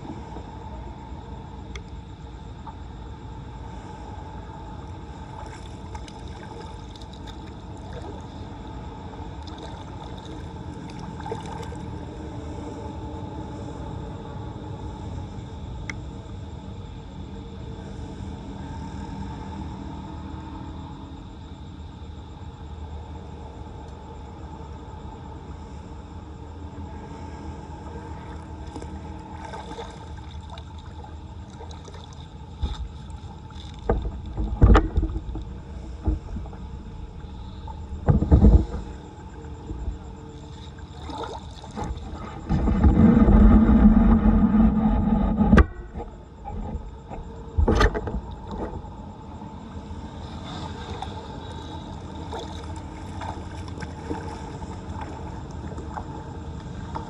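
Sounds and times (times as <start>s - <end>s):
steady background noise: 0.0s - 57.0s
floodwater splashing and sloshing: 5.0s - 12.3s, 27.7s - 43.8s, 45.6s - 57.0s.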